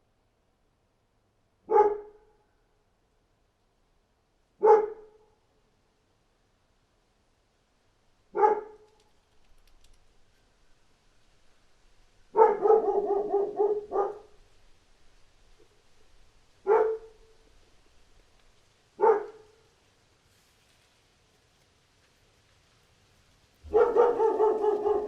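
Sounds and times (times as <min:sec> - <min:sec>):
dog barking: 0:01.7 - 0:02.4, 0:04.6 - 0:05.2, 0:08.3 - 0:08.9, 0:12.3 - 0:14.4, 0:16.6 - 0:17.4, 0:19.0 - 0:19.6, 0:23.6 - 0:25.0.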